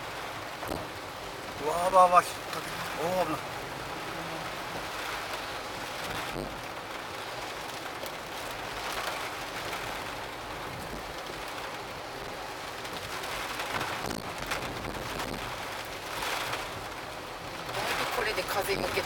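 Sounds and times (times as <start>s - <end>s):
heavy rain: 0.0s - 19.0s
wind: 0.0s - 19.0s.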